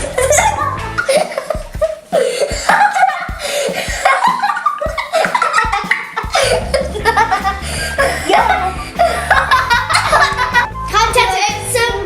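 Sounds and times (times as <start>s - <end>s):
girls laughing and giggling: 0.0s - 10.8s.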